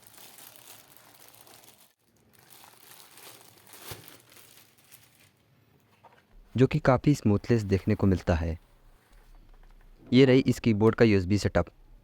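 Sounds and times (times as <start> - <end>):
packaging crinkling: 0.0 - 5.4.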